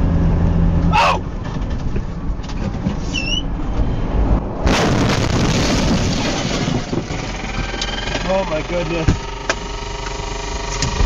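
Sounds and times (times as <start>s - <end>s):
rumbling machinery: 0.0s - 11.0s
high squeak: 3.1s - 3.5s.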